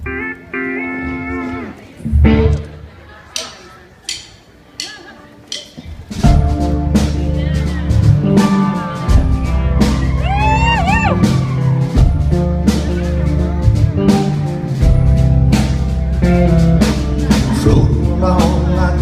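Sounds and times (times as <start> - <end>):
high sliding lead guitar line: 0.0 - 2.8, 6.3 - 19.0
bass and guitar chords: 0.0 - 2.9, 6.1 - 19.0
drum beat: 4.1 - 18.9.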